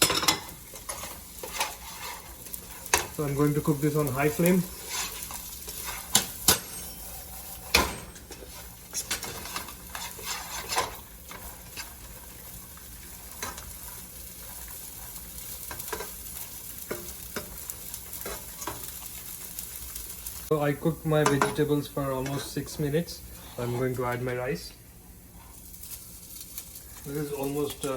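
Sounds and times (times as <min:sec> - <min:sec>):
vegetables sizzling in hot oil: 0:00.0 - 0:27.9
utensil scraping and tapping pan: 0:07.7 - 0:11.9.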